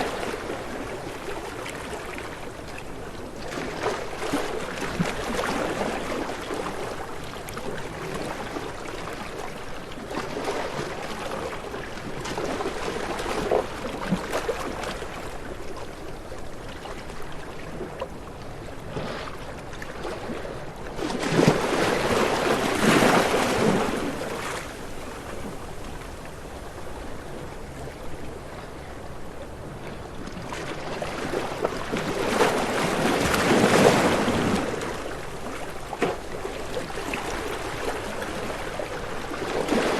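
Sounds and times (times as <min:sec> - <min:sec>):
ocean waves breaking: 0:16.7 - 0:39.9.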